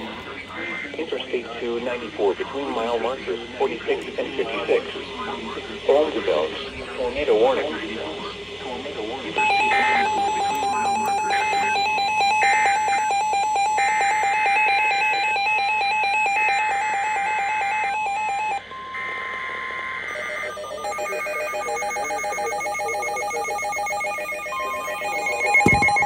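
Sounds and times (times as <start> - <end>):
steady pulsing tone: 0.0 - 26.0
buzzy data bursts: 0.6 - 26.0
beeping alert tones: 20.2 - 26.0.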